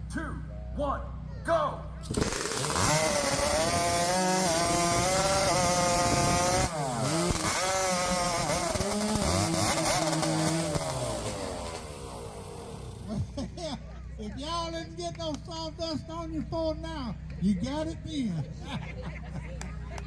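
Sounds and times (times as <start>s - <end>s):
chainsaw cutting log: 2.0s - 13.3s.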